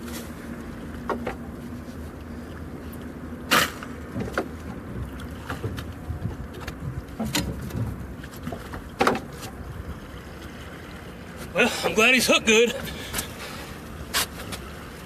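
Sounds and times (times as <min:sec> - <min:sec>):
water current rumble: 0:00.0 - 0:15.0.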